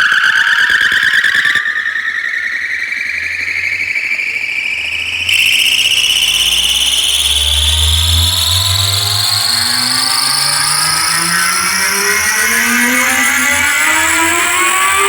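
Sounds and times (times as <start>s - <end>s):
rising electronic tone sweep: 4.8s - 15.0s.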